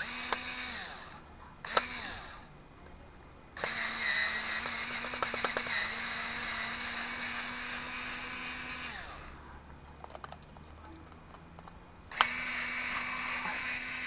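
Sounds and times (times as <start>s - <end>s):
small electric motor hum: 0.0s - 14.0s
sharp click: 1.7s - 2.0s.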